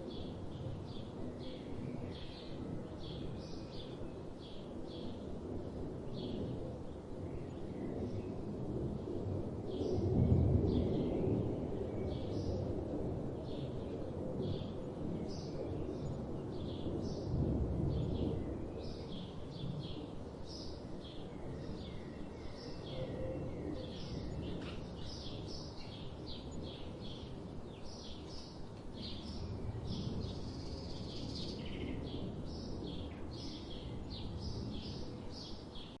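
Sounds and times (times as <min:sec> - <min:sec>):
small birds chirping: 0:23.7 - 0:36.0.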